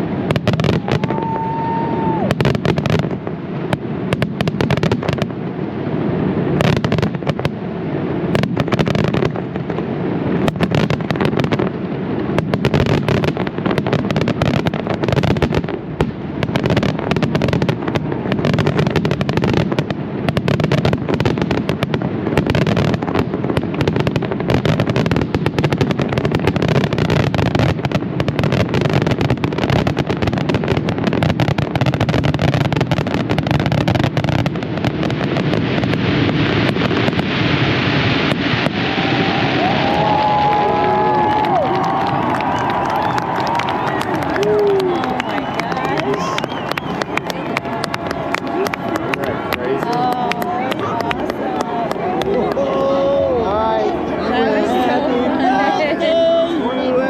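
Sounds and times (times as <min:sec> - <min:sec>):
firework whistle: 0:00.3 - 0:03.0, 0:35.8 - 0:48.8.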